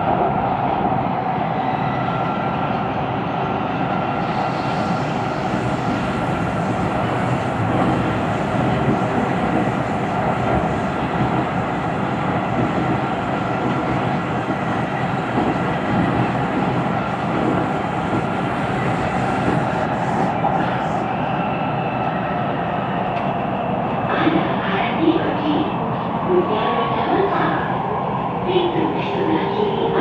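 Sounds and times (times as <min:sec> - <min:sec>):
train wheels rolling on rail: 0:03.8 - 0:21.4.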